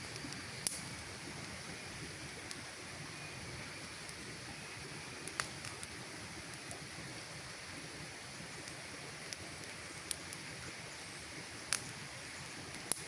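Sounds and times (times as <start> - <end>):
campfire hissing: 0.0 - 13.0
fire crackles and pops: 0.0 - 13.0.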